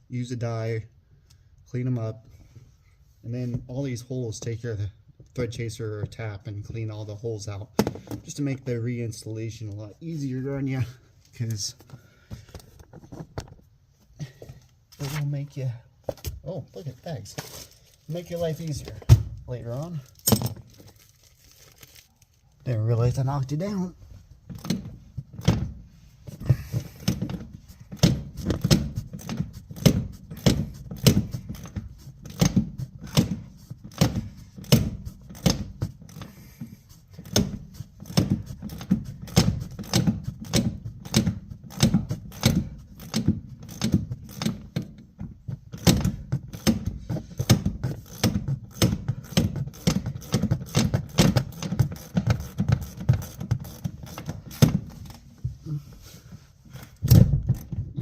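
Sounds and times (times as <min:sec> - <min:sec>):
ratchet wrench clicking: 0:37.2 - 0:44.6, 0:45.8 - 0:54.7.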